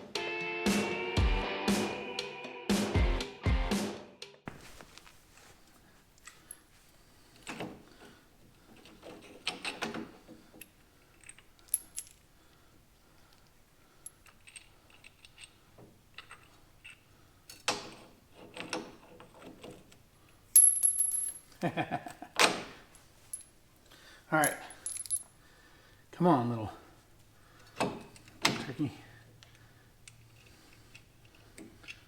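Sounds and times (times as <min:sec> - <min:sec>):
metal hardware clinking and rattling: 0:08.7 - 0:12.3, 0:14.0 - 0:21.6, 0:24.4 - 0:25.4.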